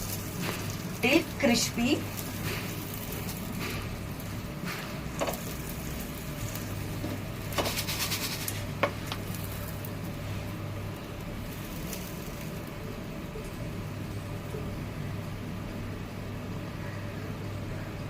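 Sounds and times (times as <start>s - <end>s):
butter sizzling in a pan: 0.0s - 14.5s.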